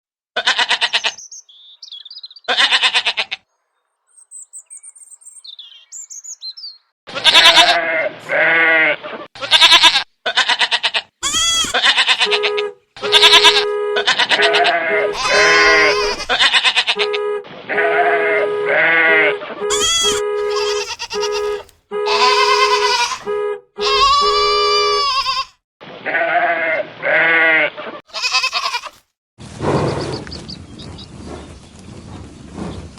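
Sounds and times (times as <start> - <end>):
goats bleating: 0.4 - 1.2, 2.5 - 3.4, 7.1 - 29.0
small bird chirps: 0.9 - 2.6, 3.7 - 6.9.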